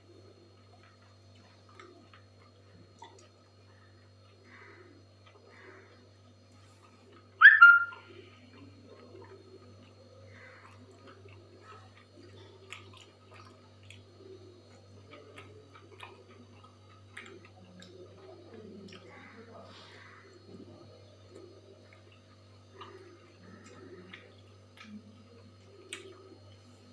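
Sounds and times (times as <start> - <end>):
faint eating sounds: 0.0 - 26.9
steady low hum: 0.0 - 26.9
high whistle-like call: 7.4 - 8.0.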